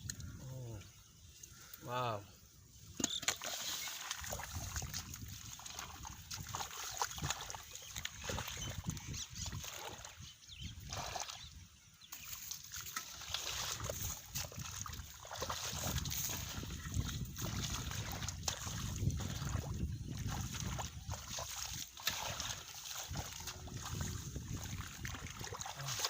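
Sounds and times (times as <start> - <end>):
hands splashing in shallow water: 3.0 - 10.2, 12.1 - 26.0.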